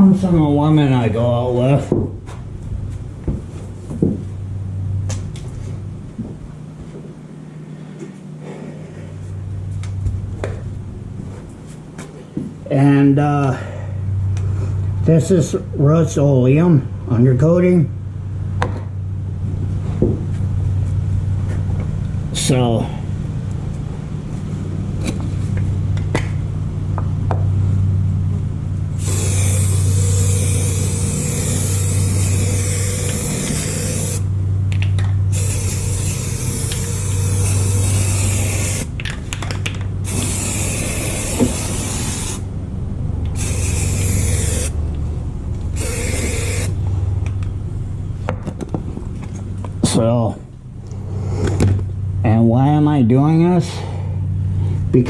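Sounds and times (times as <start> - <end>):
steady low hum: 0.0 - 55.0
aerosol can spraying: 29.0 - 34.3, 35.3 - 38.9, 40.1 - 42.5, 43.3 - 44.8, 45.8 - 46.8.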